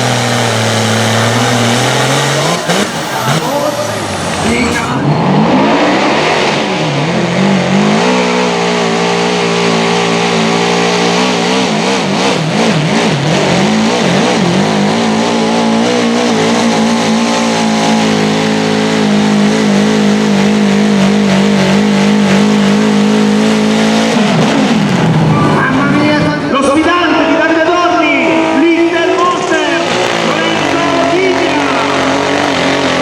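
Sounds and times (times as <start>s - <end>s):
engine at high revs: 0.0s - 33.0s.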